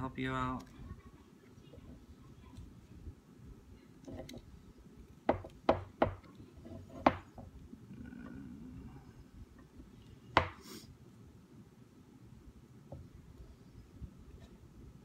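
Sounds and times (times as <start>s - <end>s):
tools knocking on hard surface: 5.3s - 6.2s, 6.8s - 7.5s.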